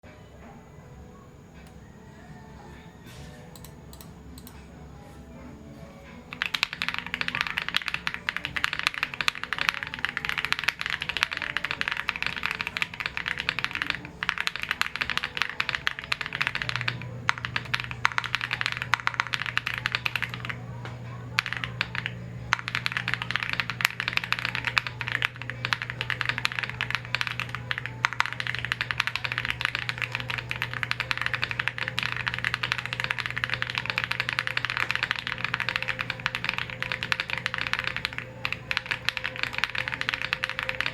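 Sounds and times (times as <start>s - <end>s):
mechanical keyboard typing: 6.3s - 40.9s.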